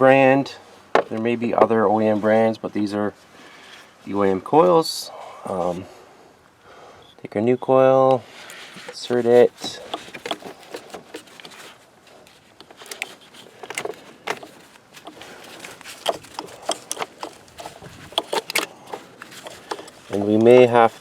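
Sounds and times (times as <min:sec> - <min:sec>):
hands clicking and tapping parts: 0:08.5 - 0:21.0.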